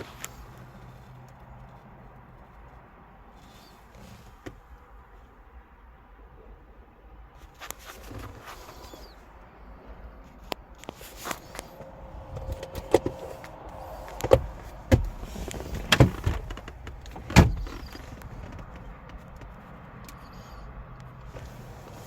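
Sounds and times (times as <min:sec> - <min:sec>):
sharp knocks and clunks: 0:12.3 - 0:19.5.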